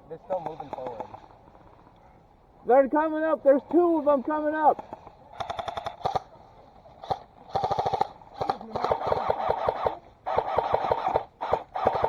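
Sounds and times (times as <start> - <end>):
airsoft gun firing bursts: 4.8 - 6.3, 7.0 - 12.0.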